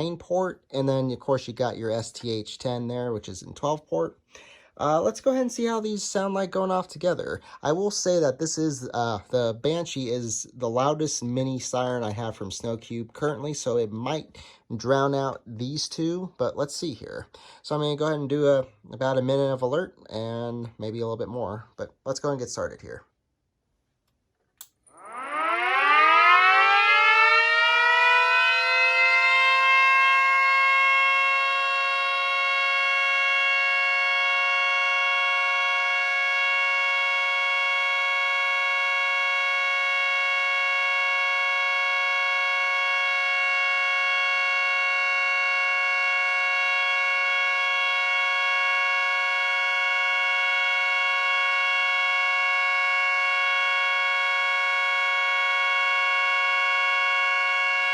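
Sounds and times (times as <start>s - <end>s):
sirens winding up: 24.6s - 57.9s.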